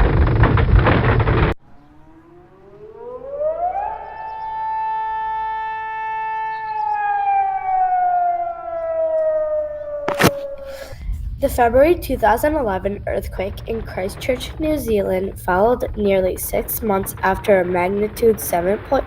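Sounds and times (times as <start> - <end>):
warning siren wailing: 1.6 - 19.0
sharp click: 10.1 - 10.6.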